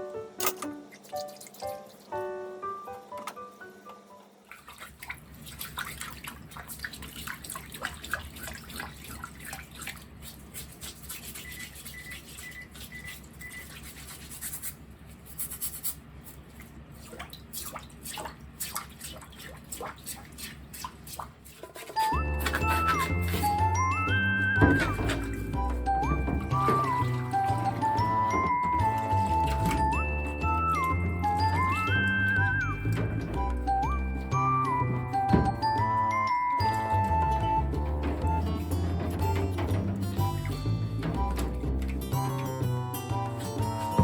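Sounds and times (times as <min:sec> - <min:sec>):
stiff brush scrubbing: 0:04.7 - 0:36.0, 0:36.7 - 0:42.6.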